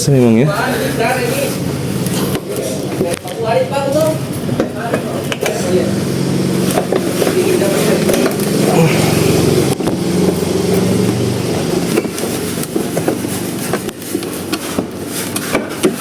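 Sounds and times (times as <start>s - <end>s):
engine-like hum: 0.0s - 16.0s.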